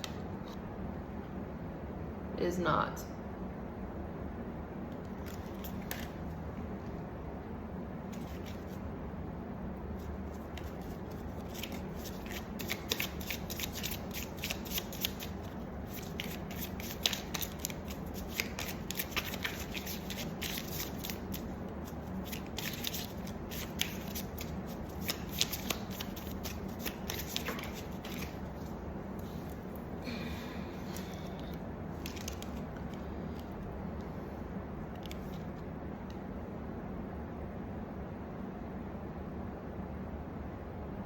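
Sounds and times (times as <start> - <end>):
cards being shuffled: 5.1 - 6.2, 8.1 - 8.8, 10.0 - 29.8, 30.9 - 33.6.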